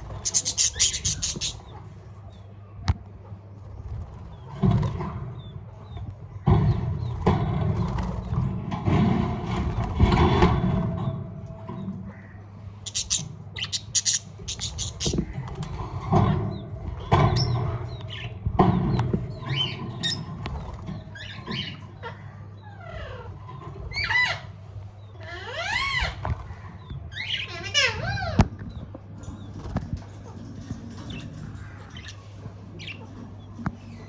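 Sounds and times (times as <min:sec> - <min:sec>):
parrots squawking and whistling: 0:00.0 - 0:01.8, 0:12.8 - 0:15.7, 0:21.1 - 0:24.5, 0:25.2 - 0:26.4, 0:27.1 - 0:28.5
wings flapping: 0:12.9 - 0:16.0.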